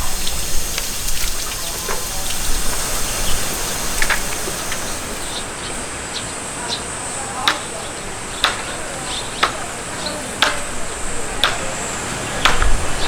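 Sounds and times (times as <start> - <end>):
running water rushing: 0.0 - 5.6.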